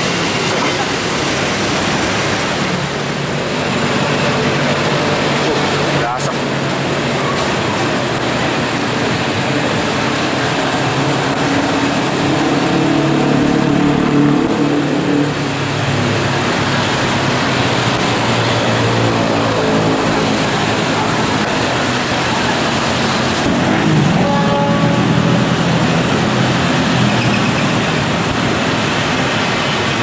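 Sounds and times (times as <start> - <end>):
traffic din: 0.0 - 30.0
deep engine note: 12.0 - 15.8.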